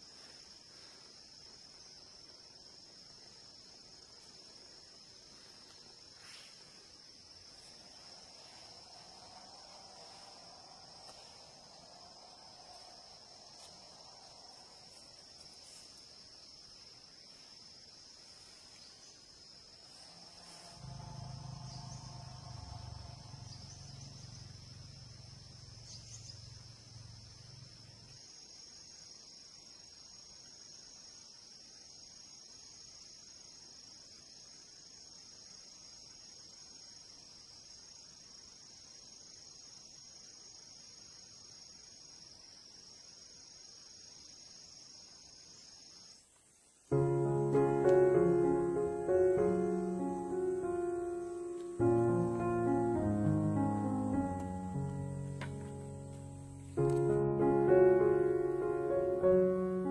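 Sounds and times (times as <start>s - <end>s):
insects trilling: 0.0s - 59.9s
faint low hum: 18.3s - 28.6s.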